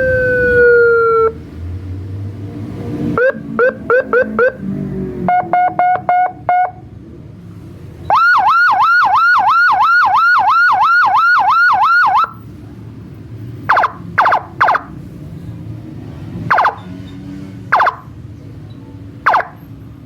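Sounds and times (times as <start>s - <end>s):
electronic siren beeps and yelp: 8.1s - 12.3s, 13.7s - 14.9s, 16.5s - 16.9s, 17.7s - 18.1s, 19.3s - 19.6s.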